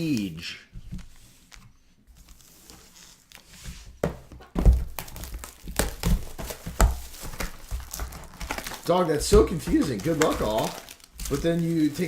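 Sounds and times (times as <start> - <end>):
dull thuds and knocks: 4.0 - 8.2, 9.2 - 10.6
wrapper crinkling: 4.7 - 12.0.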